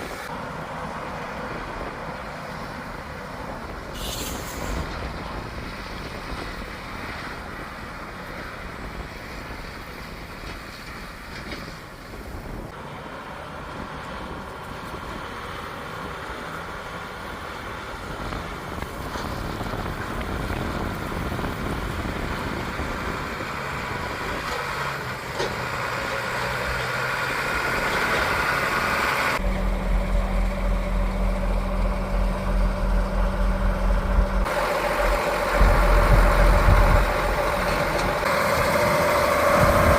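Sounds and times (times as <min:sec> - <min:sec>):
harvest machinery engines running: 0:00.0 - 0:39.9
deep engine drone: 0:17.3 - 0:39.9.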